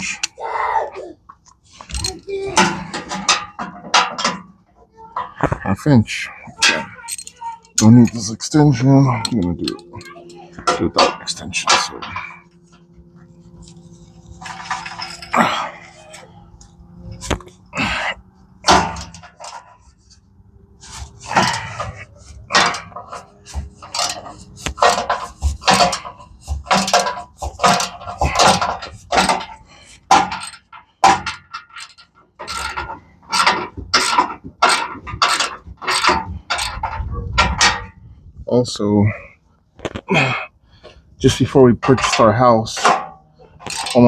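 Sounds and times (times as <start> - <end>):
hand ratchet clicking: 20.9 - 37.8.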